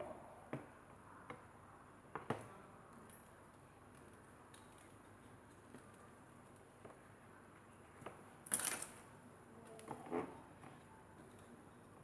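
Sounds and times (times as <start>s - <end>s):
small parts and tools clicking: 8.5s - 9.0s.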